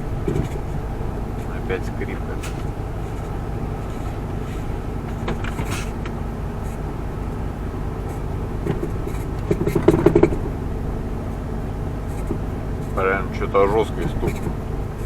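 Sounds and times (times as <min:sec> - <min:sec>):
steering column knocks and creaks: 0:00.0 - 0:07.0, 0:08.1 - 0:10.6, 0:13.8 - 0:14.6
truck engine and road drone: 0:00.0 - 0:15.0.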